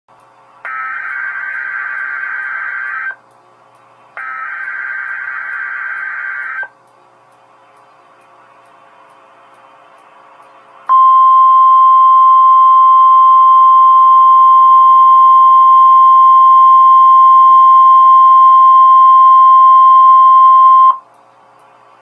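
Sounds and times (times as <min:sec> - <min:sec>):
faint radio hiss: 0:00.2 - 0:12.0, 0:20.5 - 0:22.0
loud steady warning beep: 0:00.7 - 0:03.2, 0:04.2 - 0:06.7, 0:10.9 - 0:21.1.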